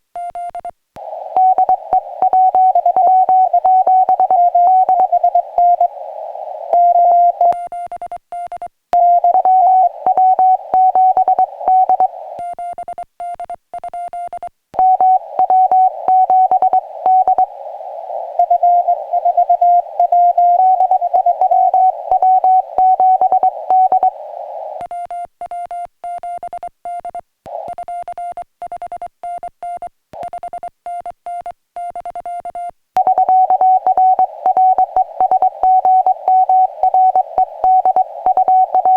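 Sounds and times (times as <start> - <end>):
radio band noise hiss: 1.0 - 3.6, 5.0 - 7.5, 15.2 - 24.8
morse code tone: 6.7 - 17.5, 18.3 - 24.2, 27.8 - 38.9.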